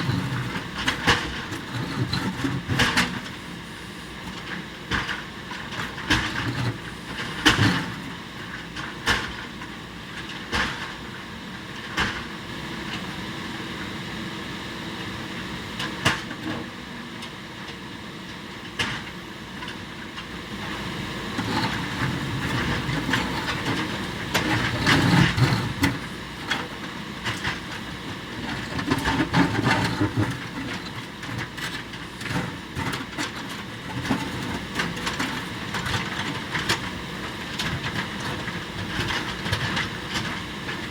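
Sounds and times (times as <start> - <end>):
diesel engine running under load: 0.0 - 40.9.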